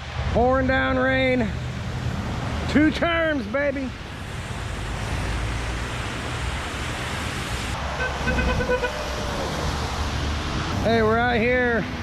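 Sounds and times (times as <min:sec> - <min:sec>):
traffic on wet road: 0:00.0 - 0:12.0
heavy rain: 0:03.7 - 0:10.9
car horn tooting: 0:08.0 - 0:09.1.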